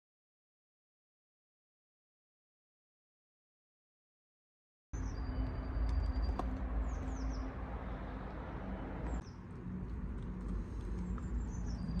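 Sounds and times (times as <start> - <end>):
small birds chirping: 5.0 - 9.5, 10.3 - 12.0.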